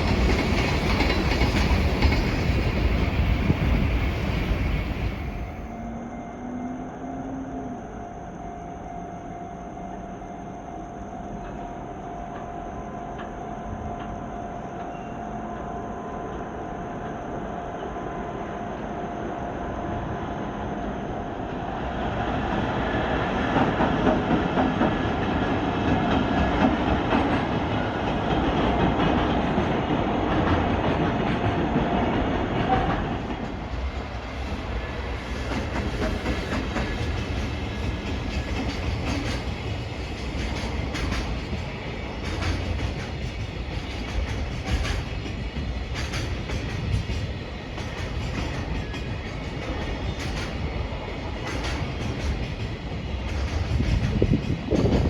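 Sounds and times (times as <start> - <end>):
wagon wheels clickety-clack: 0.0 - 3.0
train rumbling past: 0.0 - 55.0.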